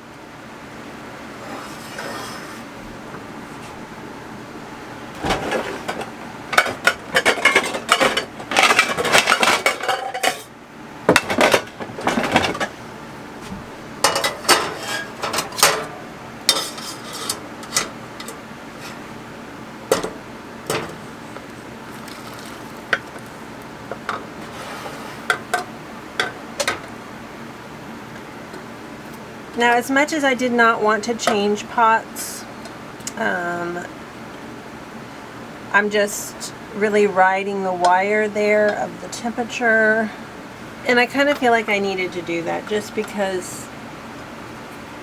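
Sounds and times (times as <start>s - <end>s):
pots and spoon clattering: 5.2s - 10.5s, 11.1s - 12.8s, 14.0s - 19.0s, 19.9s - 21.0s, 23.9s - 26.9s.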